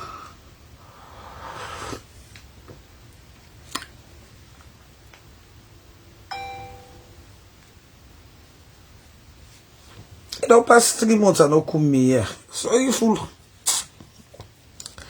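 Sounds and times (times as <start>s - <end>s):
bell-like ding: 6.3s - 7.2s.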